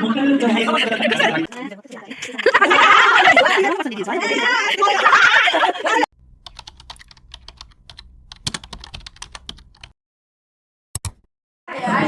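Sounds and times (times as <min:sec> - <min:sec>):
faint low hum: 0:06.2 - 0:09.9
keyboard typing clicks: 0:06.4 - 0:09.9, 0:11.0 - 0:11.3.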